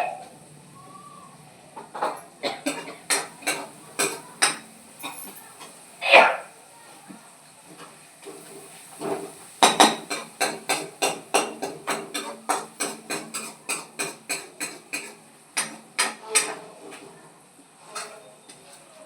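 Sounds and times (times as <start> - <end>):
utensil knocking on hard surface: 9.6 - 16.6.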